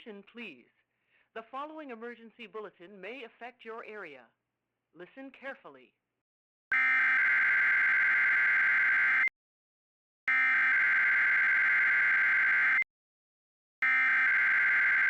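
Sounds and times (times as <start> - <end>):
emergency alert tone blasts: 6.7 - 9.3, 10.3 - 12.9, 13.8 - 15.0.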